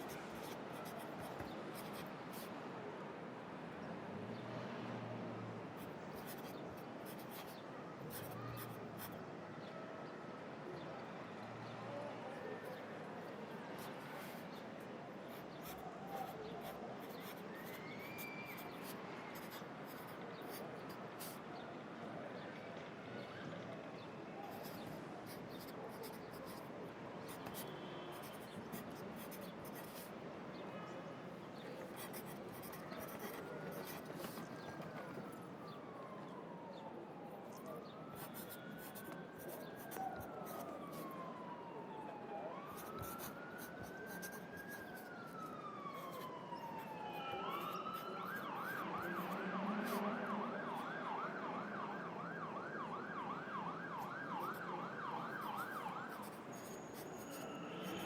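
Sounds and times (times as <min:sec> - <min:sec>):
pencil scratching on paper: 0:00.0 - 0:02.5, 0:06.2 - 0:09.1, 0:15.3 - 0:20.6, 0:27.3 - 0:30.1, 0:31.6 - 0:35.4, 0:38.2 - 0:41.2, 0:42.8 - 0:45.1, 0:55.2 - 0:58.0
city traffic: 0:00.0 - 0:58.0
emergency vehicle siren: 0:32.3 - 0:58.0.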